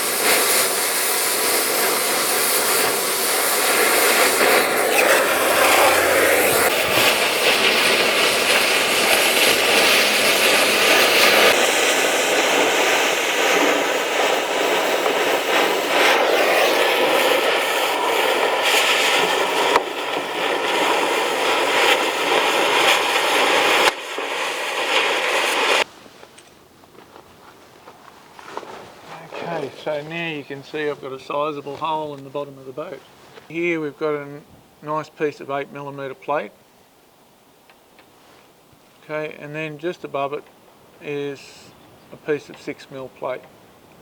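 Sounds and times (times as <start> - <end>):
cutting torch hissing roar: 0.0 - 25.9.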